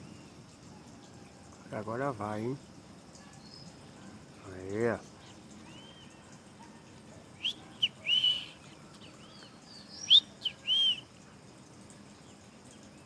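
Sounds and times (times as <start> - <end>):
bird chirping call: 4.8 - 11.2
faint bird calling: 5.1 - 11.2.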